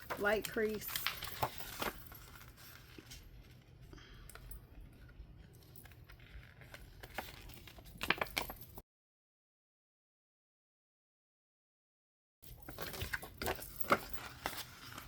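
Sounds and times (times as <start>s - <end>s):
paper rustling and folding: 0.0s - 3.9s, 4.9s - 8.6s, 12.5s - 15.0s.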